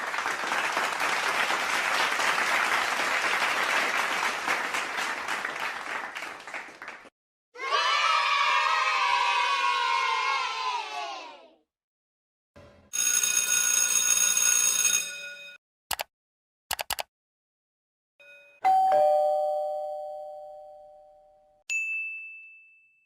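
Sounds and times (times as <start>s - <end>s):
quick clicks: 16.7s - 17.1s
brief high ding: 18.2s - 23.0s
two-note doorbell chime: 18.2s - 23.0s.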